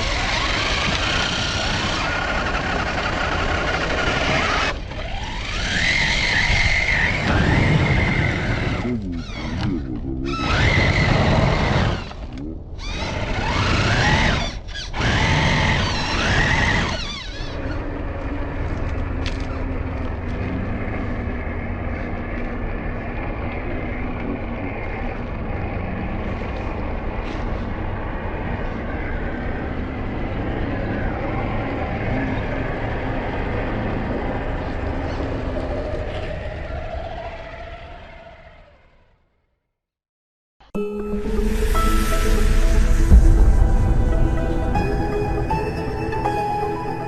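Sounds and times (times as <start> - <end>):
electric motor and gears whining: 0.0 - 35.6.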